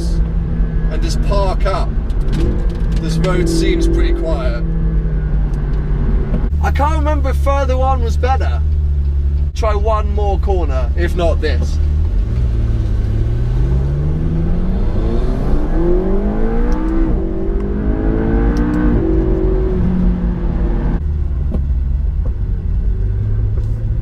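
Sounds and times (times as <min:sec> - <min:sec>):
sports car engine accelerating: 0:00.0 - 0:09.5, 0:11.0 - 0:24.0.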